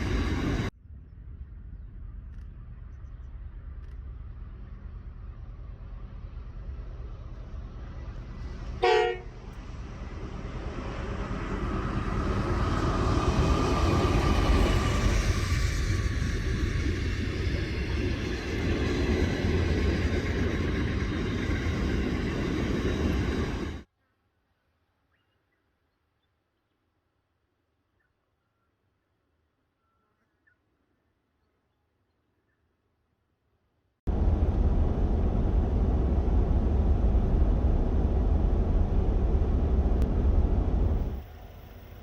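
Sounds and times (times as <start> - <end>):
train passing: 0.0 - 2.2, 3.3 - 23.9, 34.1 - 42.0
train horn blast: 8.8 - 9.6.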